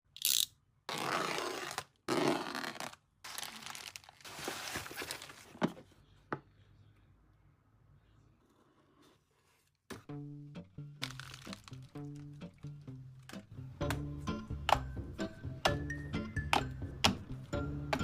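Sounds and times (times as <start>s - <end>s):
crinkling and tearing: 2.6s - 5.6s, 11.0s - 11.9s.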